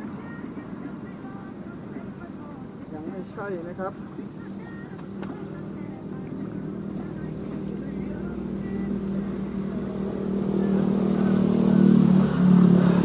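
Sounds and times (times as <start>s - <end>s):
motor engine approaching: 4.7s - 13.0s.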